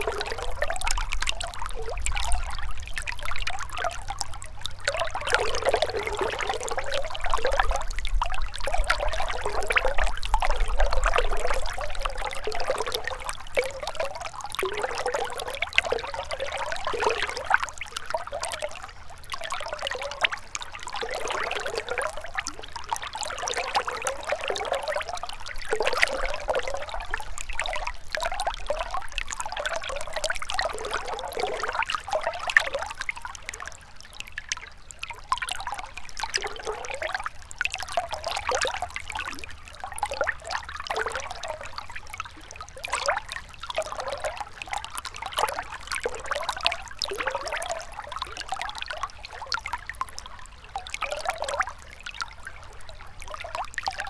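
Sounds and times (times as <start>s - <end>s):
river water babbling: 0.0s - 54.0s.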